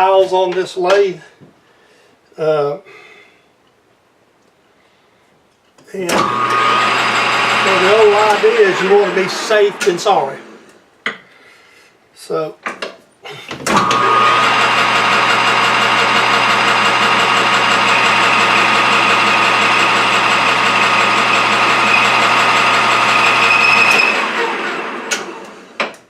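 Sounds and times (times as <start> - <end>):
metal lathe whining: 6.1 - 10.6, 13.8 - 25.6.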